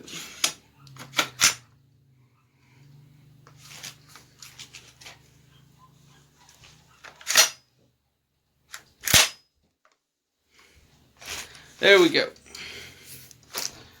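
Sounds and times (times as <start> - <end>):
shotgun parts rattling clicks: 8.7 - 9.4.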